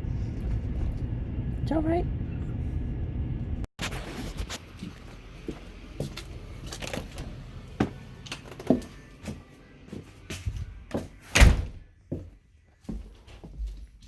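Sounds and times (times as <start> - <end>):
low rumble: 0.0 - 3.7.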